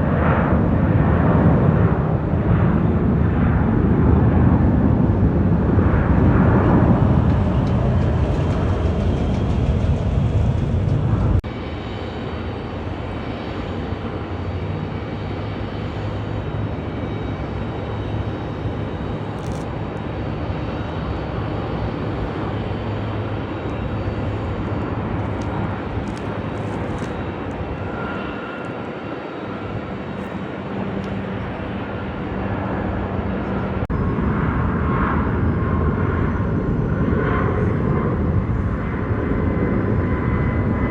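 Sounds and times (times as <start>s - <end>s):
jet engines roaring: 0.0s - 40.9s
heavy low rumble: 3.8s - 11.9s.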